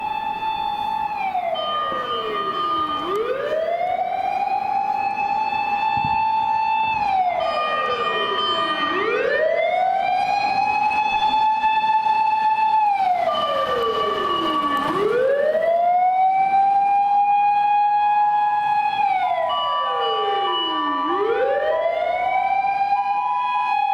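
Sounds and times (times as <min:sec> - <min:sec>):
fire engine siren wailing: 0:00.0 - 0:23.9
higher steady siren tone: 0:00.0 - 0:23.9.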